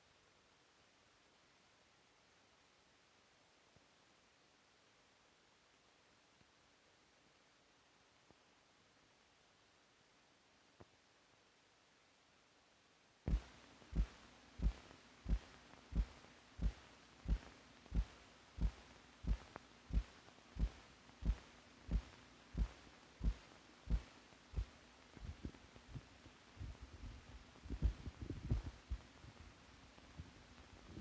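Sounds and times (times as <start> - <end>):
faint steady hum: 0.0 - 31.0
heartbeat thumps: 13.3 - 29.1.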